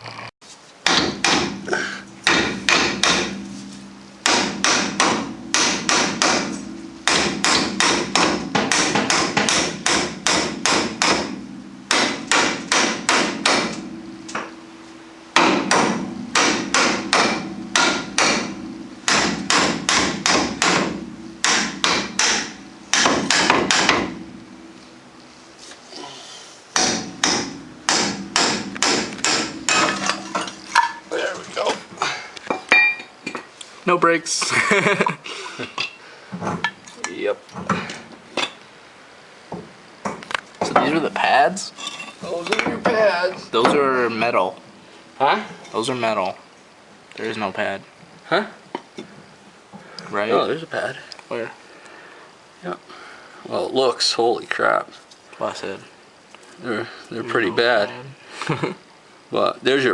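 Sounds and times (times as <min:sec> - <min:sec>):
hammer striking metal: 0:00.8 - 0:14.6, 0:15.4 - 0:24.4, 0:26.7 - 0:31.1, 0:32.0 - 0:33.4.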